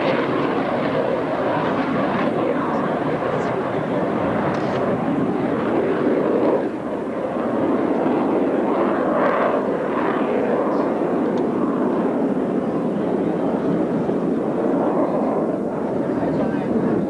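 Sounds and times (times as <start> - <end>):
jet engine roar: 0.0 - 17.0.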